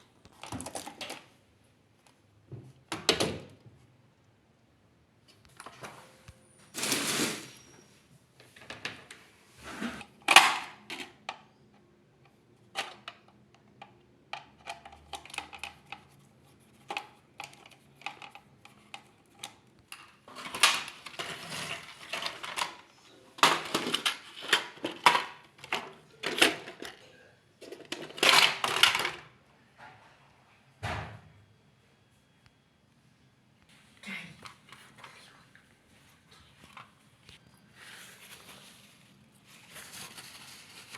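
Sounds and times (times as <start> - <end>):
scraping or rubbing: 6.8 - 7.7.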